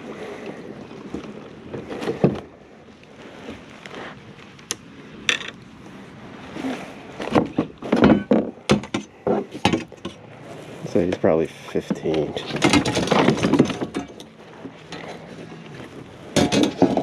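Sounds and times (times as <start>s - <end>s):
fish knocking and clattering: 7.2s - 10.2s, 11.1s - 15.2s, 16.3s - 17.0s.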